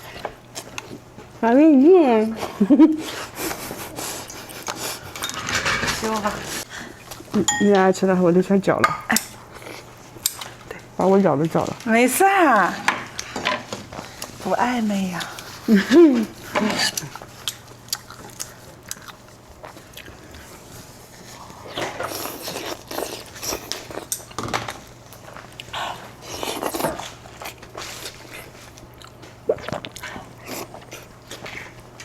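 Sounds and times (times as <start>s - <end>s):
person chewing and crunching: 16.6s - 24.4s, 25.0s - 32.0s.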